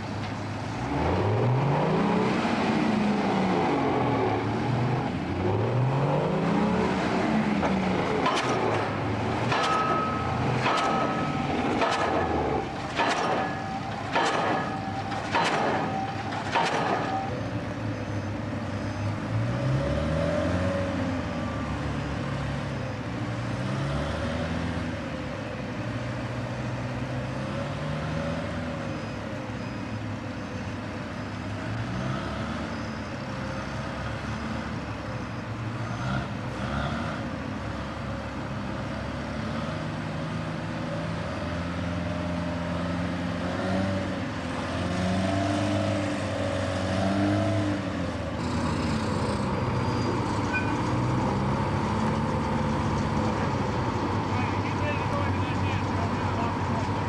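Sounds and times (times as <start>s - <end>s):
large engine revving: 0.8s - 13.5s, 18.8s - 28.8s, 31.5s - 32.8s, 35.7s - 38.0s, 38.6s - 57.0s.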